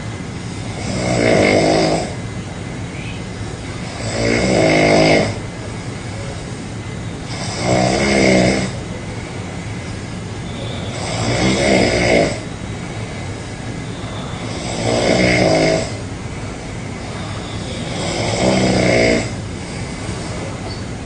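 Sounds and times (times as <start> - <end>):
steady background noise: 0.0 - 21.0
person snoring loudly: 0.4 - 2.2, 3.7 - 5.4, 7.3 - 8.8, 10.9 - 12.5, 14.4 - 16.0, 17.0 - 20.0.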